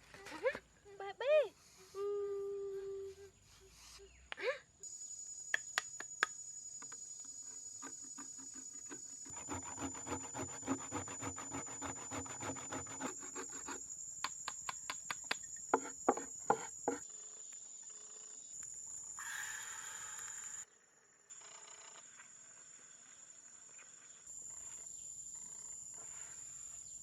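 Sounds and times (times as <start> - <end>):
high insect trill: 1.5 - 27.0
scraping strokes on wood: 7.4 - 13.9.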